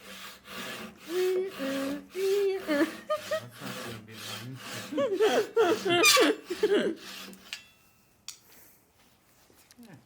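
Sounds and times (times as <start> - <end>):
hand saw cutting wood: 0.0 - 7.7
people laughing and giggling: 2.4 - 7.1.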